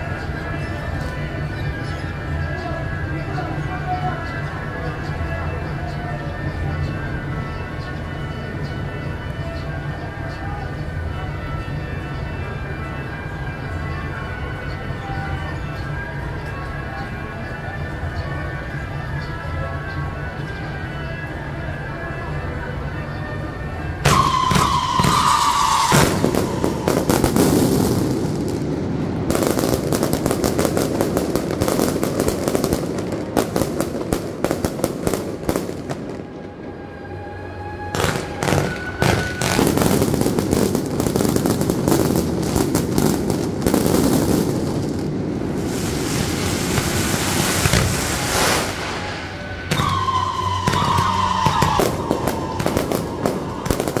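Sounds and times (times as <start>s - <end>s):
whistle falling in pitch: 24.0s - 27.9s, 37.0s - 40.2s, 48.6s - 54.0s
firecrackers crackling: 24.0s - 54.0s.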